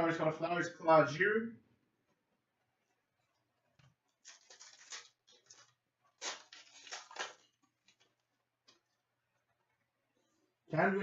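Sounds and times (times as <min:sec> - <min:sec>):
foil wrapper crinkling torn open: 0:04.1 - 0:09.0.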